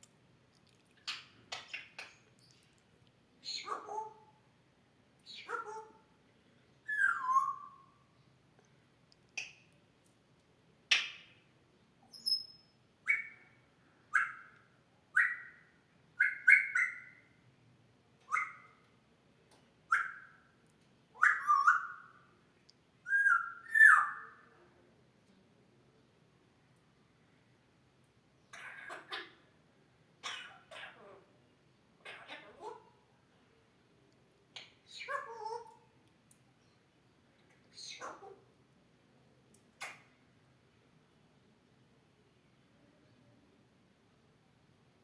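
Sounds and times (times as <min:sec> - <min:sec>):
parrot imitating coughs: 0:30.2 - 0:31.2.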